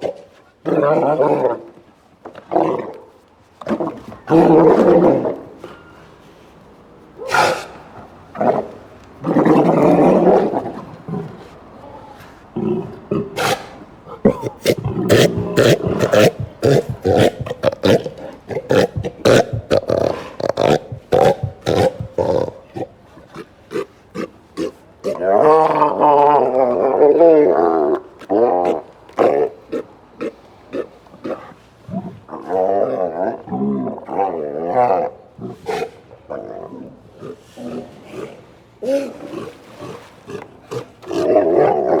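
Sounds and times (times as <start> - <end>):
sea lions barking: 7.1 - 31.6.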